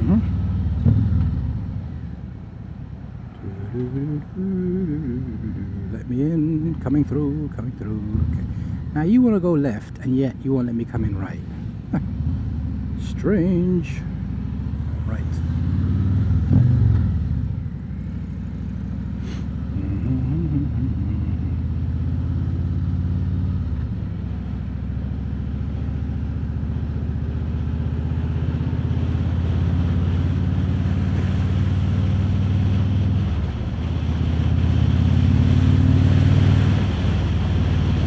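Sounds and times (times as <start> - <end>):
motorcycle engine running: 0.0 - 2.4, 3.5 - 6.6, 11.1 - 31.4.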